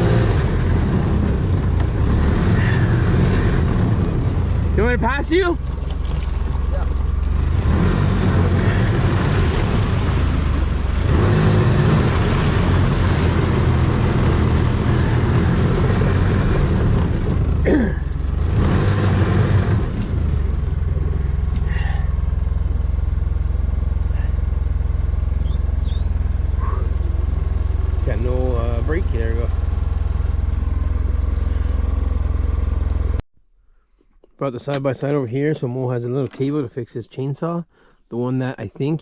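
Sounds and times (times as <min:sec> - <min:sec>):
utility vehicle engine running: 0:00.0 - 0:33.2
short falling squeal: 0:25.4 - 0:26.8.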